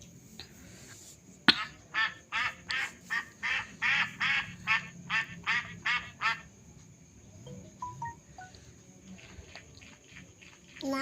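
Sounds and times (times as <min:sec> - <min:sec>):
duck quacking: 0:01.5 - 0:06.5.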